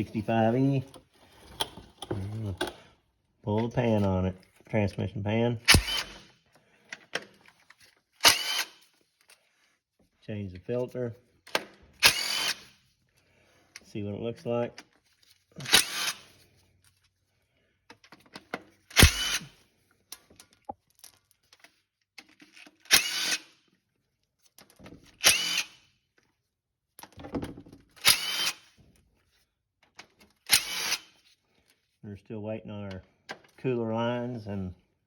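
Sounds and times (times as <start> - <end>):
cordless power driver whining: 5.7 - 6.2, 19.0 - 19.5, 28.0 - 28.6.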